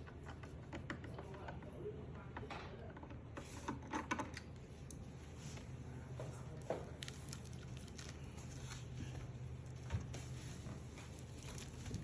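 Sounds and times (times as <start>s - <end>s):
faint handling clicks and taps: 0.0s - 5.0s
low steady hum: 0.0s - 12.0s.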